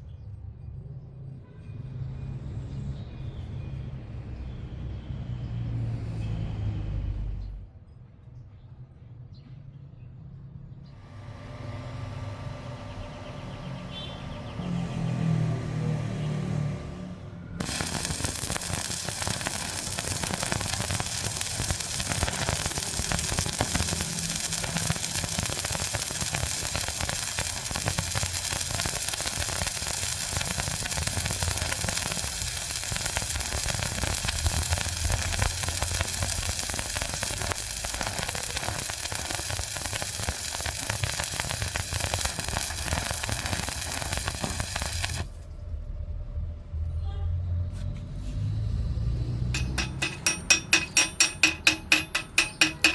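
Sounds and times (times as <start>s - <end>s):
welding arc crackling: 17.6s - 45.6s, 49.5s - 52.9s.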